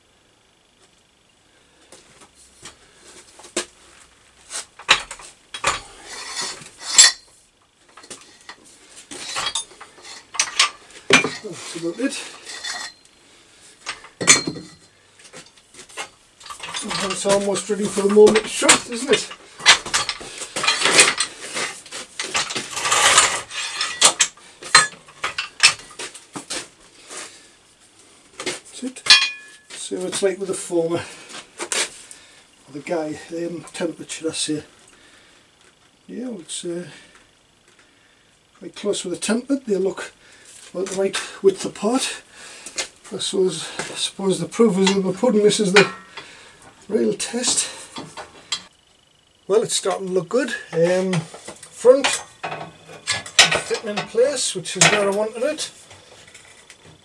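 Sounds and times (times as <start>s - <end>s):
metal parts clinking and scraping: 4.5s - 13.1s, 13.8s - 26.1s, 29.0s - 29.8s, 43.5s - 48.7s, 50.4s - 56.8s
rustle: 29.5s - 33.6s.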